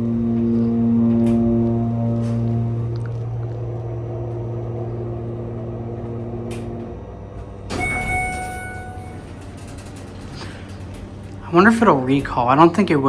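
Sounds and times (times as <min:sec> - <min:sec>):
elevator machinery humming: 0:00.0 - 0:13.0
elevator clunk: 0:06.0 - 0:13.0
elevator chime ding: 0:07.6 - 0:13.0.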